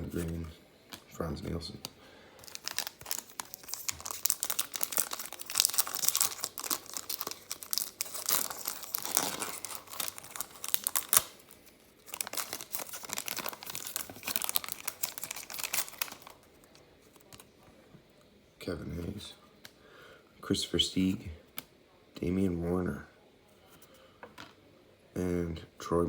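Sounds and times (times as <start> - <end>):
wrapper crinkling and tearing: 2.4 - 17.4.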